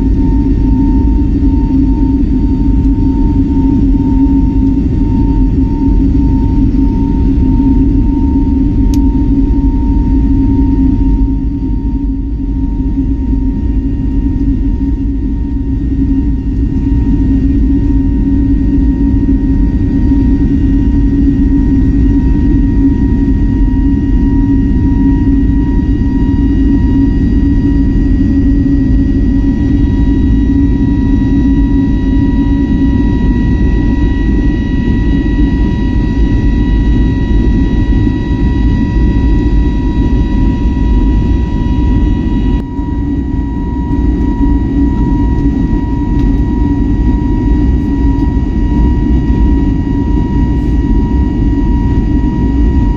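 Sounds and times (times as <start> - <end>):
high whine: 0.0 - 52.9
jet engine cabin rumble: 0.0 - 52.9.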